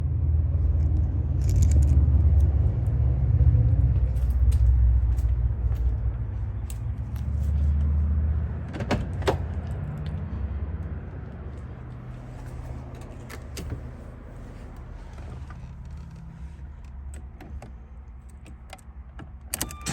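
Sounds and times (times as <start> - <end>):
car engine rumbling: 0.0 - 19.9
keys jingling: 4.0 - 7.8.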